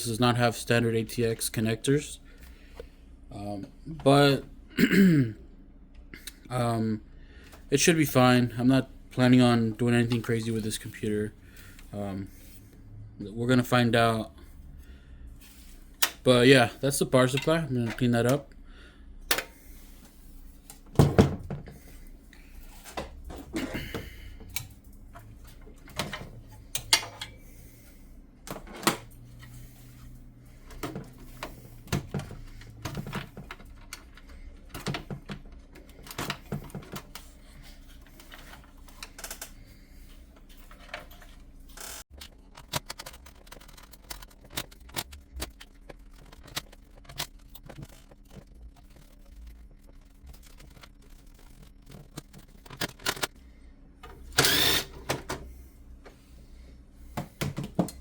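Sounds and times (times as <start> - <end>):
computer parts clicking and knocking: 20.7 - 21.8, 22.7 - 27.4, 30.6 - 37.3, 40.7 - 53.4, 54.0 - 55.5, 57.1 - 58.0.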